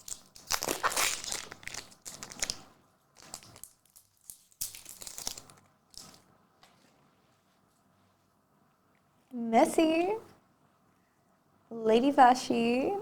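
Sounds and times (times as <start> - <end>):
plastic wrapper crinkling: 0.0 - 6.3.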